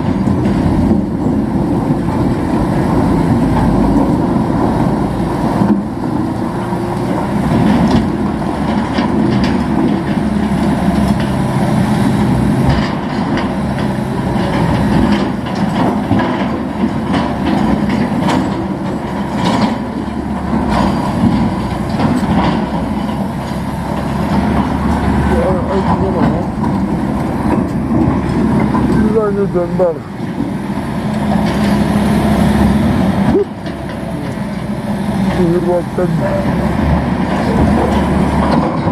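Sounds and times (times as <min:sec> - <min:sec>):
heavy diesel machine running: 0:00.0 - 0:38.9
metallic clanks and knocks: 0:07.4 - 0:11.4, 0:12.6 - 0:30.6, 0:33.3 - 0:38.9.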